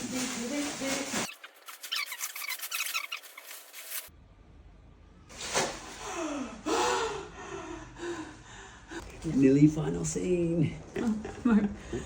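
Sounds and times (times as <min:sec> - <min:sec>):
bubble wrap crackling: 0:00.0 - 0:04.1
high sliding squeal: 0:01.4 - 0:04.1.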